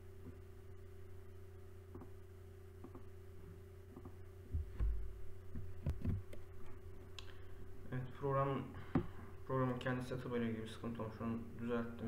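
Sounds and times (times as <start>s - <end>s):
low electrical hum: 0.0s - 12.0s
low thumps: 4.5s - 6.4s.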